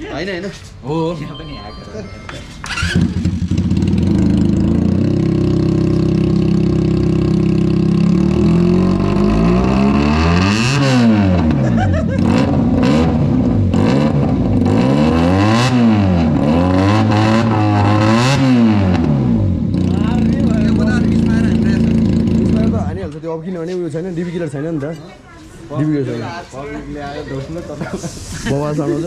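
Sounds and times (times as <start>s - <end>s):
motorcycle engine revving: 2.6s - 23.0s.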